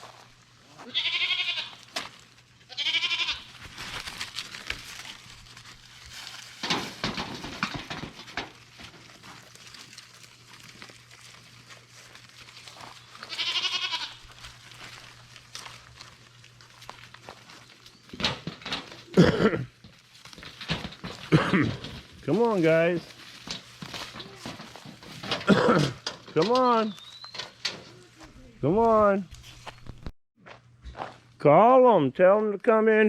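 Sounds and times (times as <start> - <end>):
goat kids bleating: 0.6 - 1.9, 2.6 - 3.6, 13.0 - 14.7
rustles and small knocks: 1.7 - 2.6, 3.2 - 31.2.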